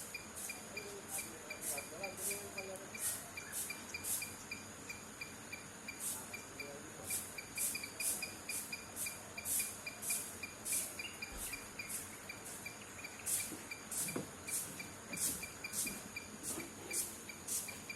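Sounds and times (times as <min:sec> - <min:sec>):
insect hissing buzzes: 0:00.0 - 0:04.6, 0:07.0 - 0:17.9
insects chirping: 0:00.0 - 0:17.9.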